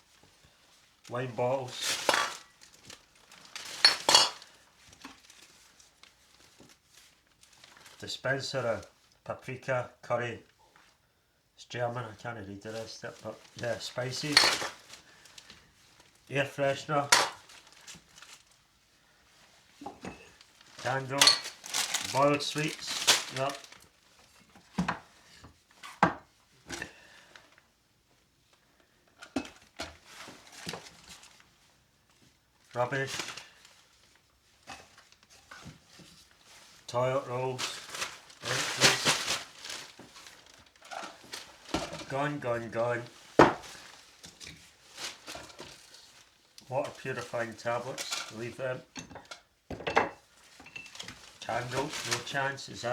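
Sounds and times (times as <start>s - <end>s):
bottles and cans clinking: 1.9s - 2.5s, 3.6s - 4.5s, 14.2s - 14.9s, 17.0s - 17.6s, 21.1s - 23.5s, 49.0s - 51.0s.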